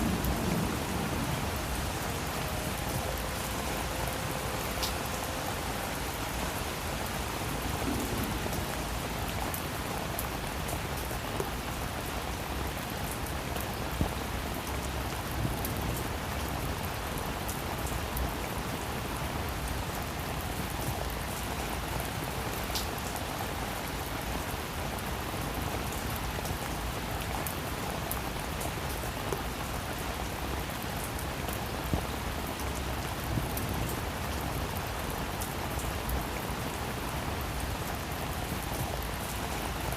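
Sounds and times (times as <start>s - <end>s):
steady rain falling: 0.0s - 39.9s
raindrop ticks: 22.7s - 23.2s.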